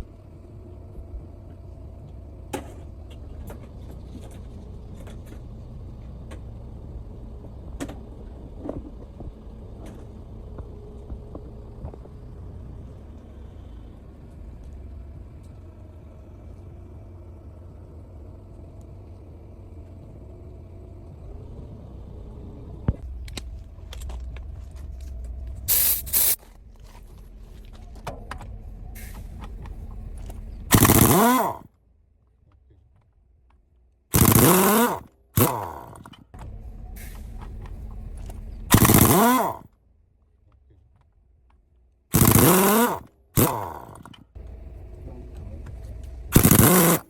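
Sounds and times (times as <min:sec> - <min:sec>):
low mechanical rumble: 0:00.0 - 0:47.0
bursts of hiss: 0:25.7 - 0:26.4.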